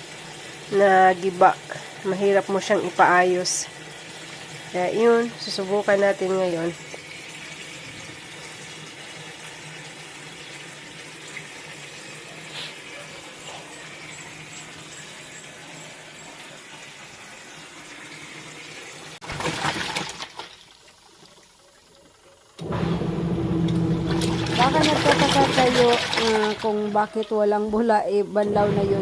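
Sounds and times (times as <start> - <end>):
water swishing in washing machine: 0.0 - 29.0
low motor hum: 22.6 - 27.7, 28.3 - 29.0.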